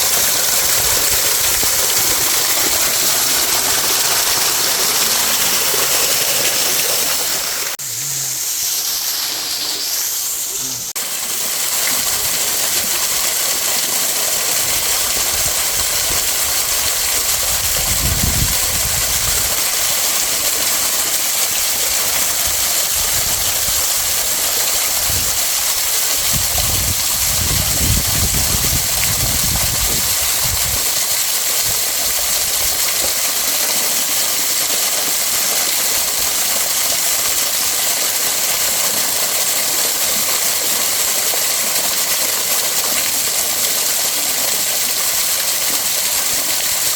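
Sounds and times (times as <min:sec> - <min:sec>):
waterfall rushing: 0:00.0 - 0:17.6.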